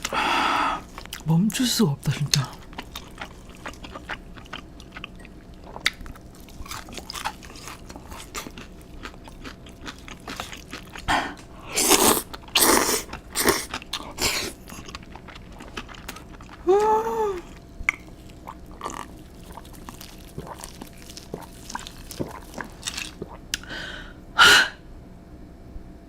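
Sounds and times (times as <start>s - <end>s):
chewing with wet mouth clicks: 0.8s - 16.7s, 17.4s - 23.7s
loud crunchy bites: 5.8s - 16.5s, 17.9s - 23.4s.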